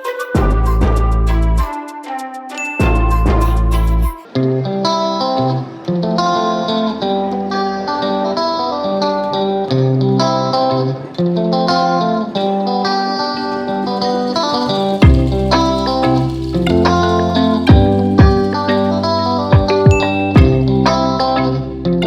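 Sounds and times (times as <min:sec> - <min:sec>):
plucked guitar melody: 0:00.0 - 0:22.0
bass line: 0:00.4 - 0:01.7, 0:02.8 - 0:04.2, 0:15.0 - 0:18.6, 0:19.6 - 0:22.0.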